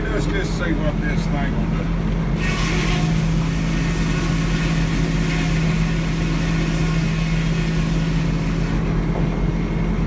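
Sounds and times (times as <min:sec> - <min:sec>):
diesel engine running steadily: 0:00.0 - 0:10.0.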